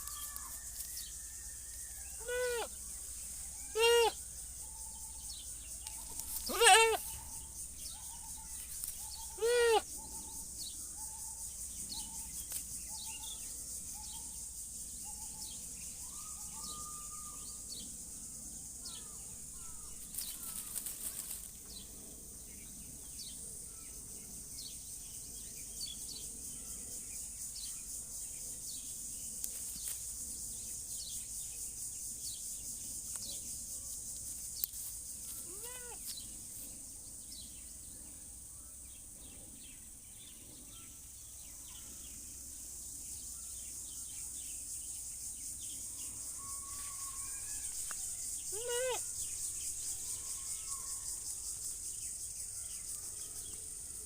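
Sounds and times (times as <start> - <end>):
high insect drone: 0.0 - 54.0
goat bleating: 2.2 - 2.7, 3.7 - 4.2, 6.4 - 7.1, 9.4 - 9.8, 35.5 - 36.0, 48.5 - 49.0
bird chirps: 3.5 - 14.4.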